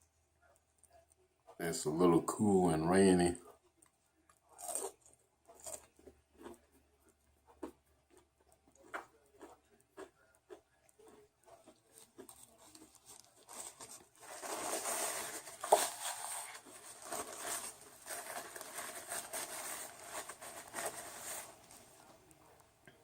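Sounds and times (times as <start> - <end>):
food wrapper rustling and crinkling: 8.8 - 22.7.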